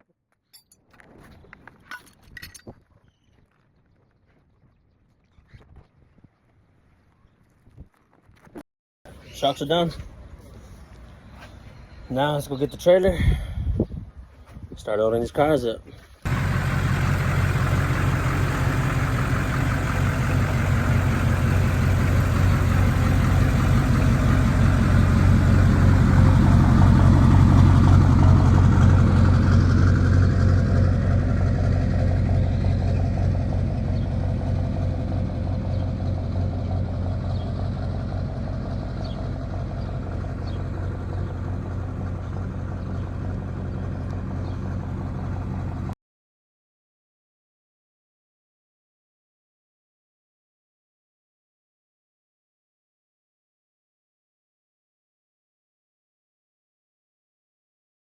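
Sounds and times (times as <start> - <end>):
vehicle engine running: 16.3 - 46.0.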